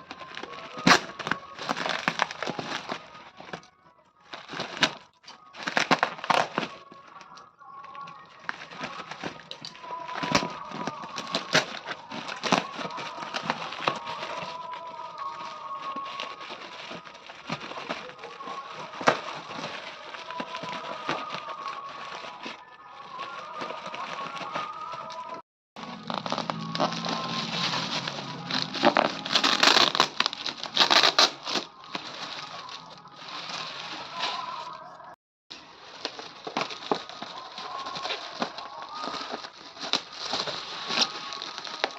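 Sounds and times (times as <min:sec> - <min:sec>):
packaging crinkling and rustling: 0:00.0 - 0:41.9.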